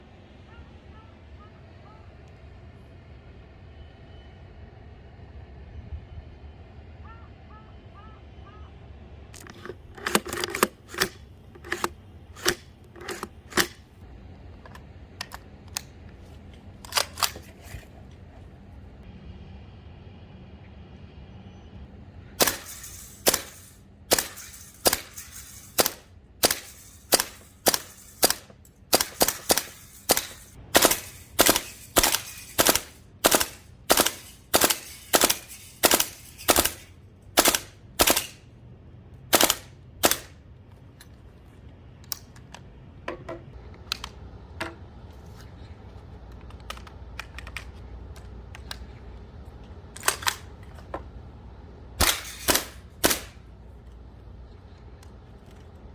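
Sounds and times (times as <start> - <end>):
airsoft rifle shots: 22.4 - 38.4, 39.3 - 40.4, 52.0 - 53.4.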